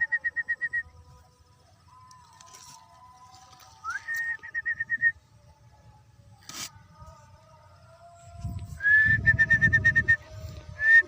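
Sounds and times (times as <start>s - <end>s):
wind rumble on microphone: 6.9s - 11.0s.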